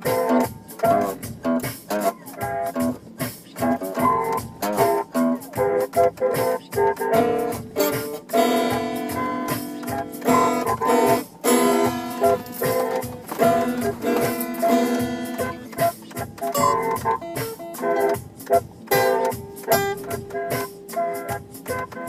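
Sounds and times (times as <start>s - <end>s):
plucked guitar notes: 0.0s - 22.0s.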